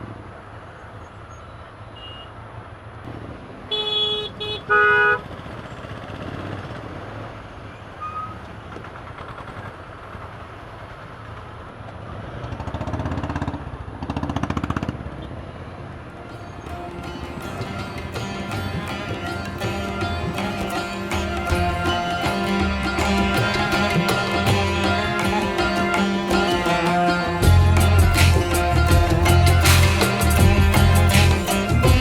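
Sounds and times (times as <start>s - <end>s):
motorcycle riding in traffic: 0.0s - 32.0s
vehicle horn honking: 2.0s - 2.3s, 3.7s - 5.2s, 16.5s - 32.0s.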